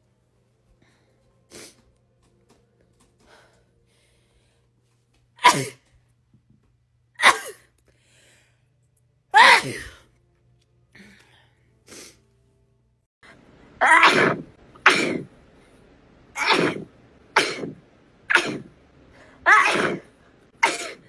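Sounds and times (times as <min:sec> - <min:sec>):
person sneezing: 0:09.4 - 0:10.0, 0:13.8 - 0:15.3, 0:19.5 - 0:21.0.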